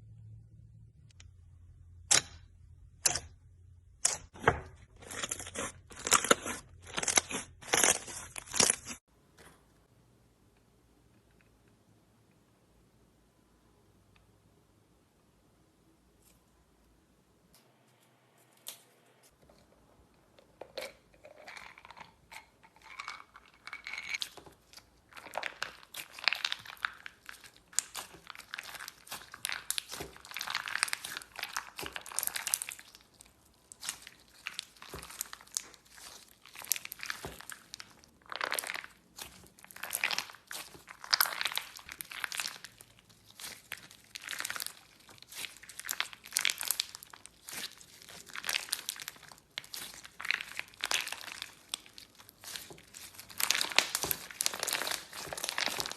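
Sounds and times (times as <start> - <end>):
knife cutting brittle soap: 4.0 - 9.0.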